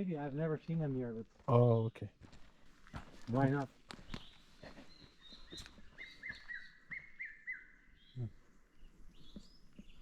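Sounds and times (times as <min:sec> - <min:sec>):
faint bird calling: 0:04.7 - 0:08.6.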